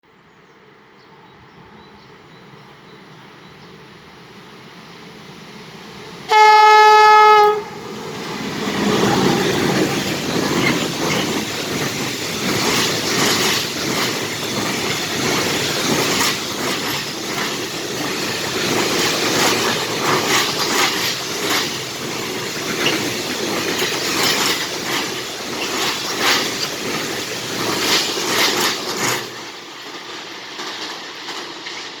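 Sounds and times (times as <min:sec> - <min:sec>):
locomotive horn blast: 0:06.3 - 0:07.9
train wheels clattering over rail joints: 0:08.1 - 0:32.0.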